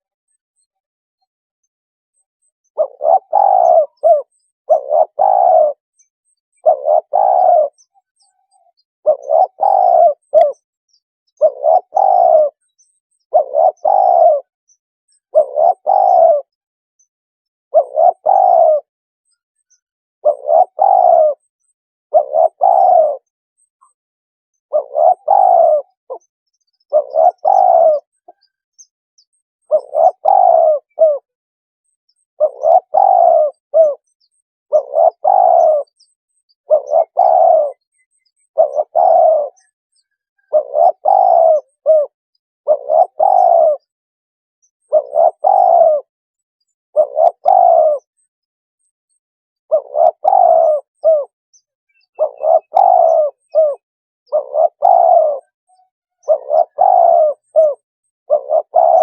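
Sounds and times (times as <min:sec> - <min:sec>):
dove cooing: 0:02.7 - 0:05.9, 0:06.6 - 0:10.6, 0:11.3 - 0:14.6, 0:15.2 - 0:16.6, 0:17.7 - 0:18.9, 0:20.2 - 0:21.5, 0:22.1 - 0:23.7, 0:24.7 - 0:28.6, 0:29.6 - 0:31.4, 0:32.4 - 0:44.0, 0:44.8 - 0:46.1, 0:46.9 - 0:48.2, 0:49.7 - 0:51.4, 0:52.0 - 0:59.0.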